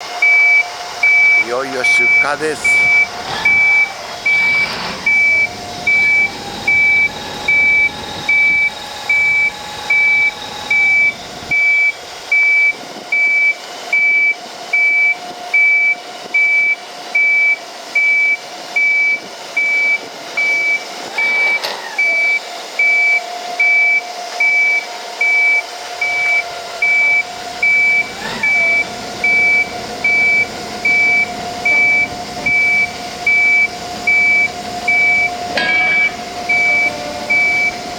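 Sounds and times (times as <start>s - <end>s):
reversing alarm beeping: 0.2s - 37.9s
engine running: 0.7s - 11.5s, 26.5s - 37.9s.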